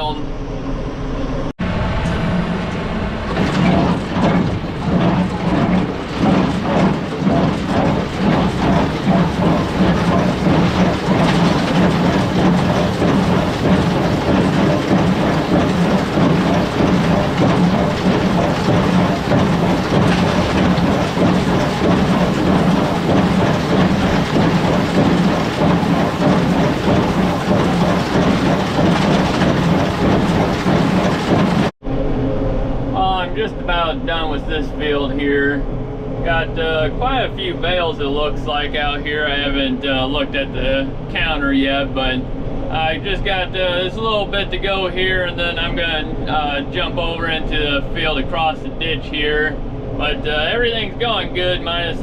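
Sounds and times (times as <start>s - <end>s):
tractor engine running: 1.7s - 31.8s
hay baler mechanical clatter: 3.2s - 31.7s.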